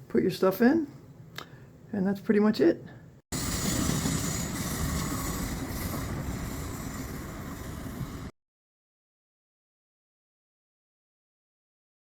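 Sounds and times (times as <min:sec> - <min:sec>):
moving train rumbling: 0:03.3 - 0:08.3.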